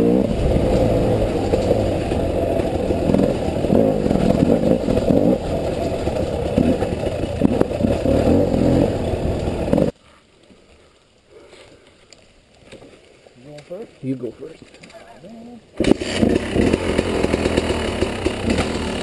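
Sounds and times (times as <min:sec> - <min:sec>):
dirt bike engine revving: 0:00.0 - 0:09.9, 0:15.8 - 0:19.0.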